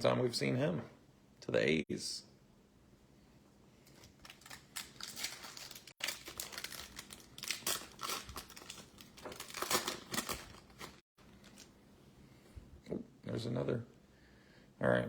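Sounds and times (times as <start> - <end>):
card pack wrapper crinkling: 3.9 - 11.8.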